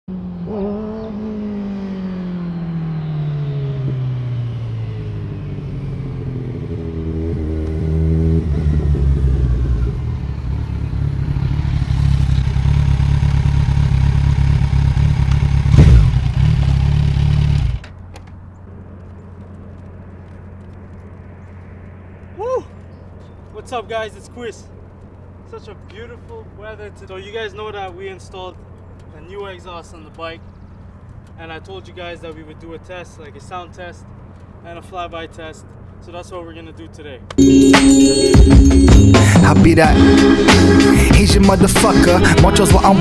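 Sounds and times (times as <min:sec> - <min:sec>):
motorcycle engine running: 0:00.1 - 0:23.5.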